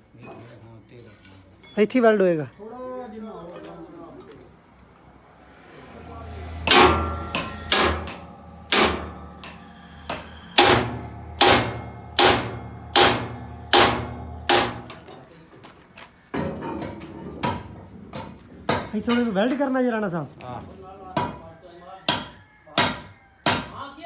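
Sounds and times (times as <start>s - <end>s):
steady low hum: 5.2s - 15.1s
hammer striking steel: 5.7s - 15.3s, 16.4s - 19.3s, 22.1s - 23.8s.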